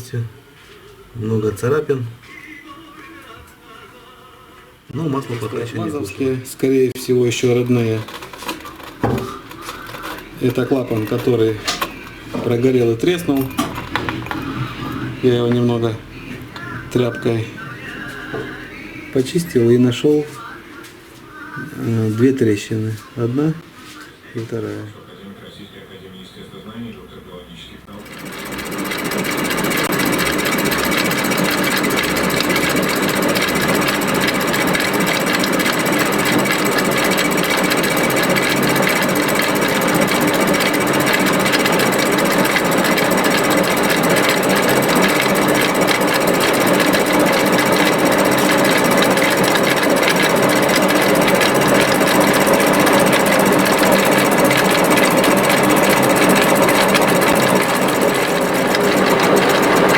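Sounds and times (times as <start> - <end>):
machine ticking and humming: 27.9 - 59.9.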